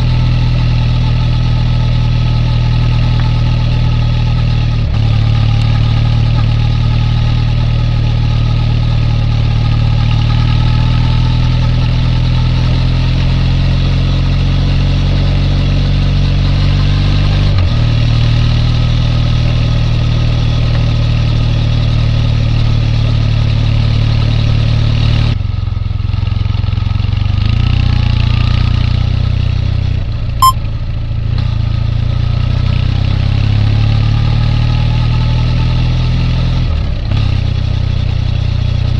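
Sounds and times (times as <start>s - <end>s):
motorcycle engine running: 0.0s - 27.7s.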